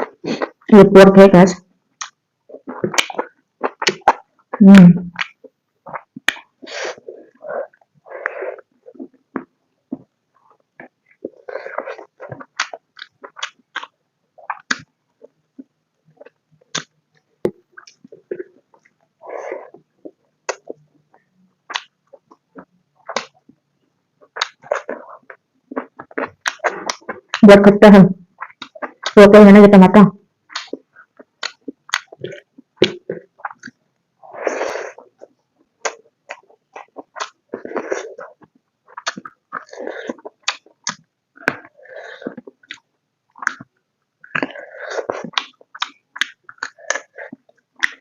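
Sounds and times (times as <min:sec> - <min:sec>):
close chewing: 0:35.0 - 0:48.0.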